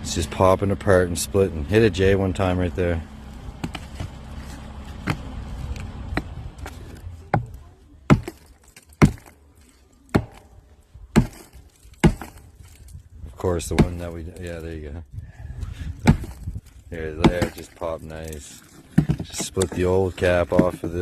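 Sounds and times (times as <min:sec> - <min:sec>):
strikes on concrete: 0:06.2 - 0:09.4, 0:10.1 - 0:12.8, 0:13.6 - 0:14.6, 0:16.0 - 0:16.5, 0:17.1 - 0:21.0.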